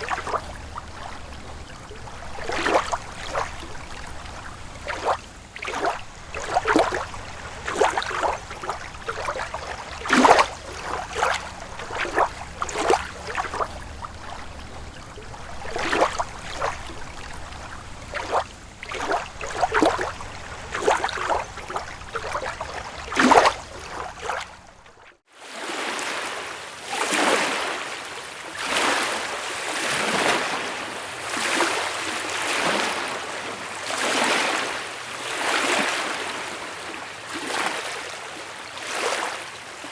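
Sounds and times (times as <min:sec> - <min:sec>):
waves washing onto a beach: 0:00.0 - 0:24.6, 0:25.2 - 0:39.9
lake waves lapping and splashing: 0:00.0 - 0:39.9.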